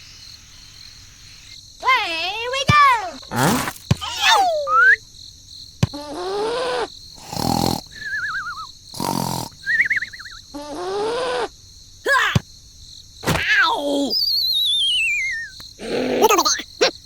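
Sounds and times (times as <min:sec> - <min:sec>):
warbling whistle tones: 0:04.2 - 0:05.0, 0:08.0 - 0:08.7, 0:09.6 - 0:10.4, 0:14.0 - 0:15.6
rising and falling pitched calls: 0:14.0 - 0:15.6.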